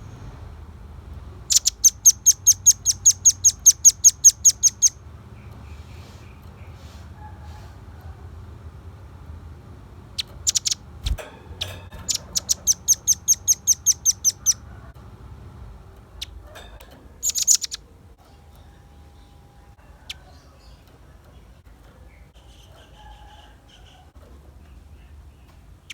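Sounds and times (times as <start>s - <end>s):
bird calling in sharp chips: 10.2s - 14.7s, 17.2s - 17.9s.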